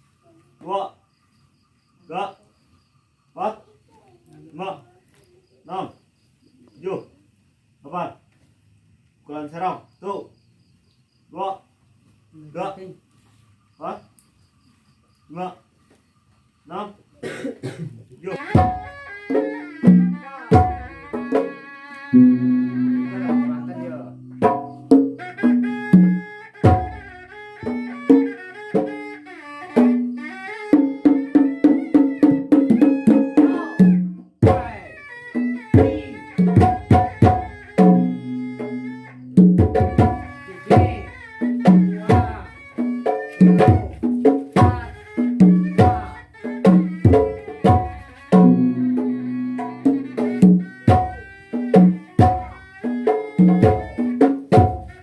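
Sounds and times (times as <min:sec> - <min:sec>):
drums played in quick strokes: 0:35.5 - 0:38.2, 0:39.4 - 0:55.0.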